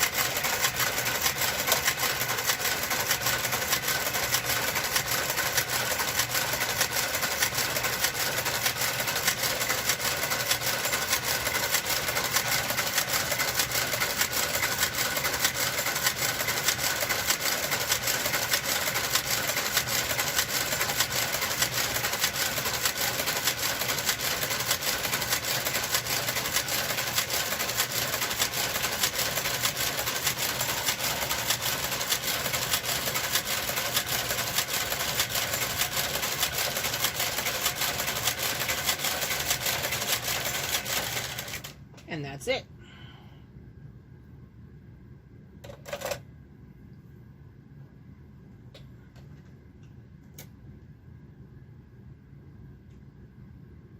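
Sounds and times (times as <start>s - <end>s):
knitting machine clattering: 0.0s - 41.8s.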